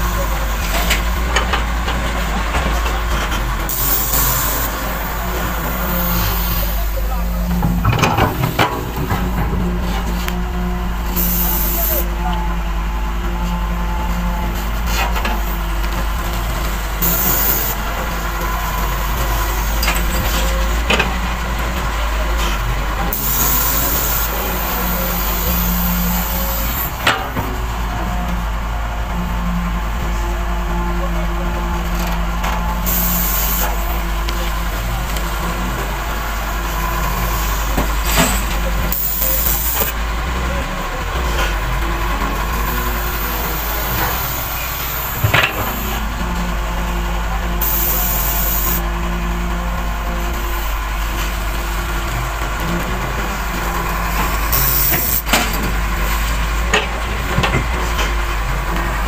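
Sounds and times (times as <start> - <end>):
heavy diesel engines running: 0.0 - 59.0
hiss bursts: 3.7 - 9.4, 10.2 - 12.2, 14.6 - 20.8, 23.1 - 27.4, 32.8 - 40.0, 42.4 - 46.1, 47.6 - 49.0, 53.3 - 56.8.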